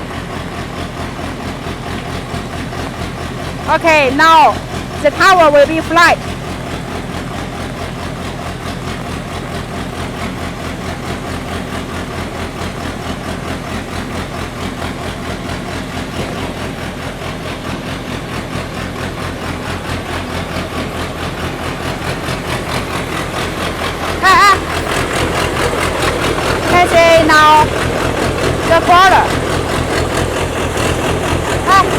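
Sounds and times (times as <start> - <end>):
drilling rig engine throbbing: 0.0 - 12.1, 12.7 - 31.9.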